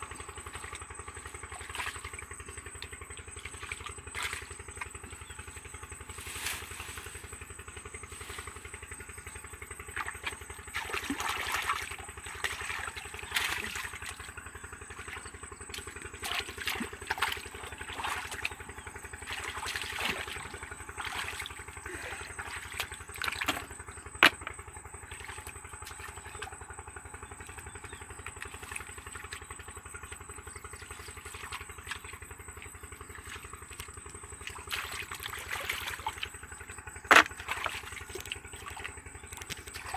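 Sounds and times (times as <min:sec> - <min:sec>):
small engine running: 0:00.0 - 0:39.9.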